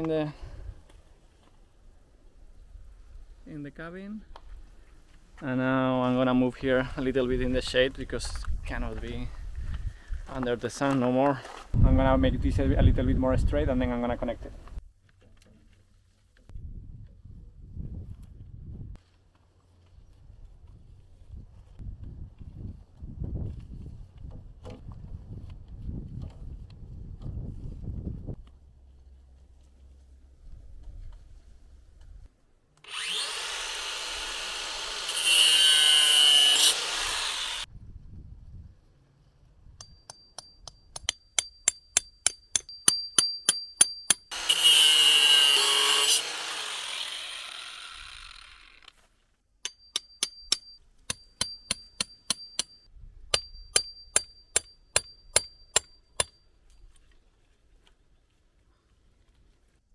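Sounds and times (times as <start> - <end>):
power tool whining: 32.8 - 37.7, 44.1 - 49.0
hammer striking metal: 39.8 - 44.7, 49.7 - 56.4.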